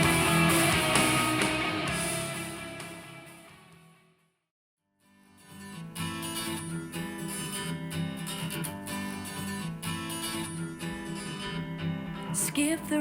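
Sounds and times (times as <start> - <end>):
strummed acoustic guitar song: 0.0 - 3.6, 5.0 - 13.0
music through computer speakers: 0.0 - 3.8.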